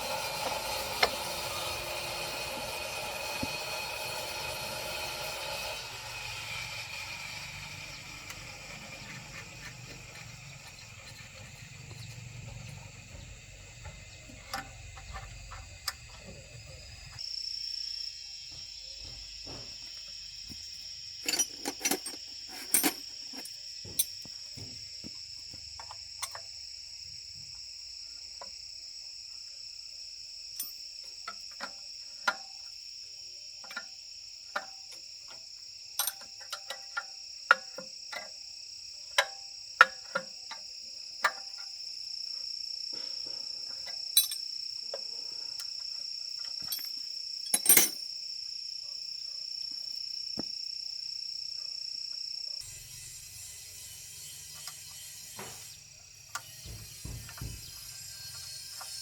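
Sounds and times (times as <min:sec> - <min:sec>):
metallic clicks of tools: 0:25.8 - 0:26.4, 0:36.0 - 0:38.3.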